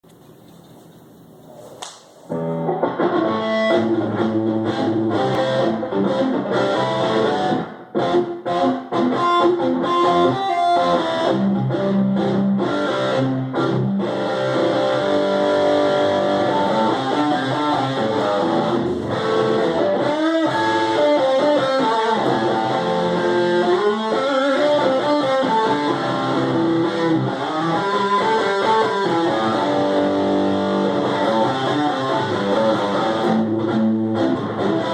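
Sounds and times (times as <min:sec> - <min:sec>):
guitar playing: 0:02.3 - 0:34.9.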